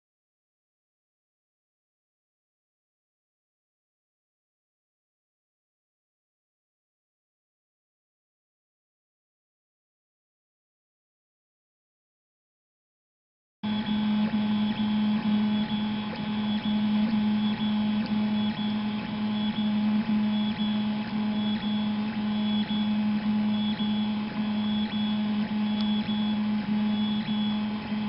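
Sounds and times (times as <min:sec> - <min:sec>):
high motor whine: 0:13.6 - 0:28.0
stepper motors humming: 0:13.7 - 0:28.0.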